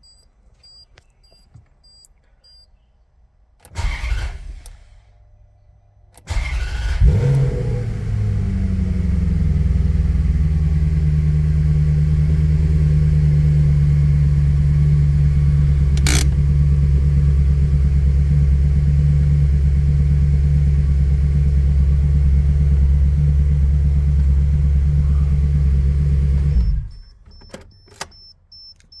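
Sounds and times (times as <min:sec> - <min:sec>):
engine cranking and running: 0:03.6 - 0:05.0, 0:06.2 - 0:28.1
sharp click: 0:15.9 - 0:16.4.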